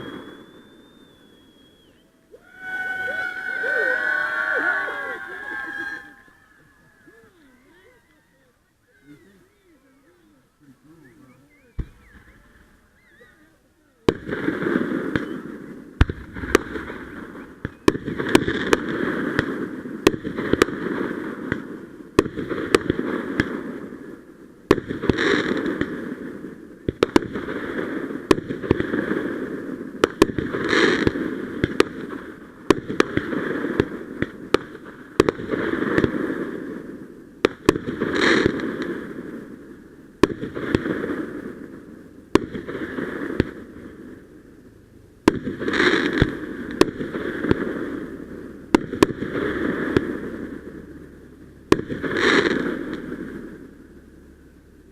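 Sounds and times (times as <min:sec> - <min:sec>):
fireworks popping and cracking: 0:00.0 - 0:02.0, 0:11.7 - 0:13.3, 0:14.0 - 0:44.6, 0:45.2 - 0:54.0
fireworks hiss and crackle: 0:00.0 - 0:54.9.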